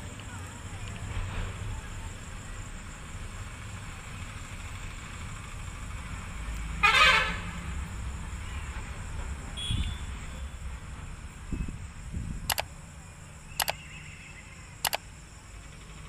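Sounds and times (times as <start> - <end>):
vehicle horn toot: 6.8 - 7.5, 9.6 - 10.5.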